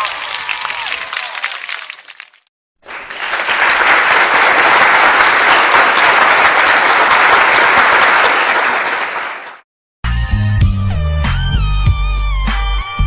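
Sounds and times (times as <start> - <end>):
crowd clapping: 0.0 - 9.7.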